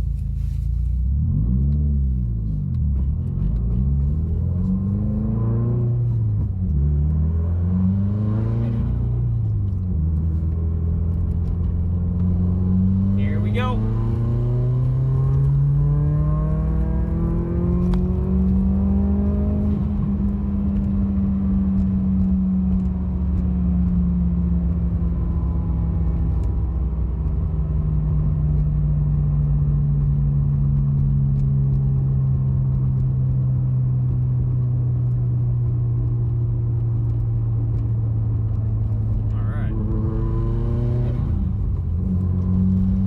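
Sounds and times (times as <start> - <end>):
turbocharged car engine revving: 3.2 - 23.2, 37.7 - 43.0
man talking: 13.1 - 13.9, 39.3 - 39.9.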